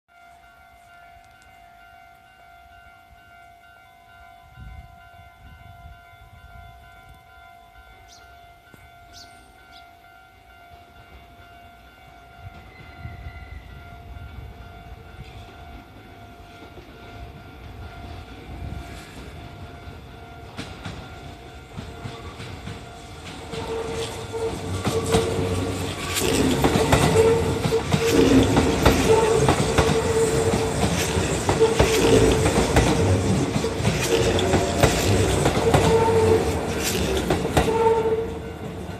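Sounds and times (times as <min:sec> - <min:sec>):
electric train passing: 0:00.1 - 0:38.9
level crossing warning bell: 0:00.1 - 0:38.9
train wheels clattering over rail joints: 0:20.4 - 0:38.9.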